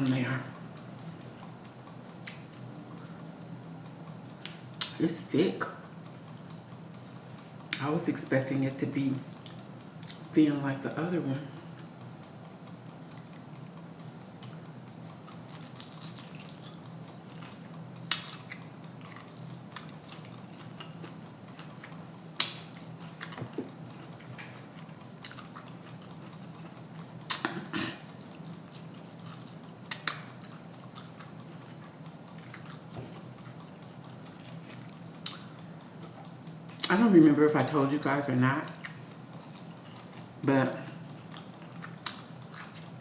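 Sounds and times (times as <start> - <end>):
steady low hum: 0.0 - 43.0
person chewing fried food: 15.2 - 36.9, 38.7 - 43.0
mouth clicks and smacks: 29.9 - 31.4.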